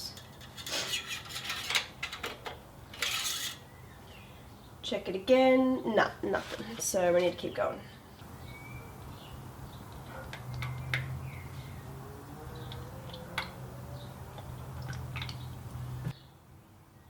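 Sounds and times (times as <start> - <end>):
oil pouring through a funnel: 12.7 - 16.1.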